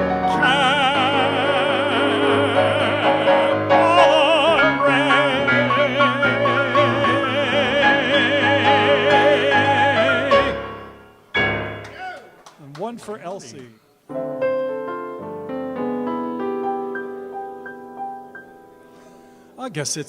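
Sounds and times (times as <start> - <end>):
man singing with vibrato: 0.0 - 11.1.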